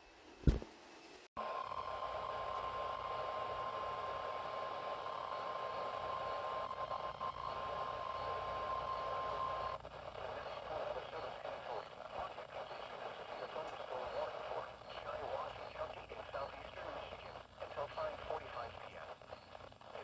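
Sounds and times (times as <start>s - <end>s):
radio hiss: 0.4s - 0.8s, 1.4s - 20.0s
sharp pop: 0.5s - 0.7s.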